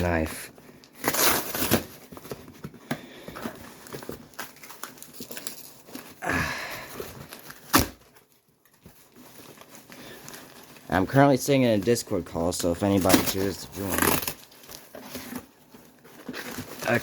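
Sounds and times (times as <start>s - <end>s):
plastic rustle: 0.0s - 17.0s
plastic package crinkling: 3.5s - 6.2s, 7.2s - 17.0s.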